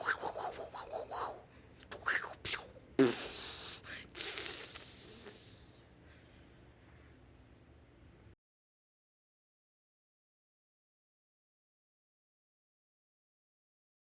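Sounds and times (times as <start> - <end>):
person making mouth sound effects: 0.0 - 5.8
breathy fwoosh hiss: 2.4 - 5.8.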